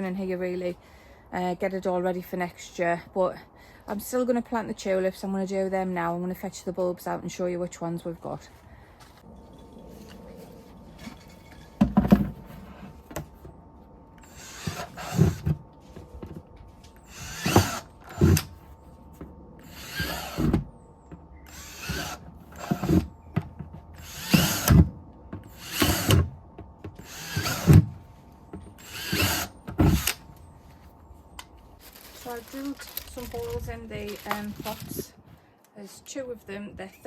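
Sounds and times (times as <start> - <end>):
power drill boring: 14.2 - 15.4, 17.0 - 18.5, 19.6 - 20.6, 21.4 - 23.1, 24.0 - 24.8, 25.5 - 26.3, 27.0 - 27.8, 28.8 - 30.2.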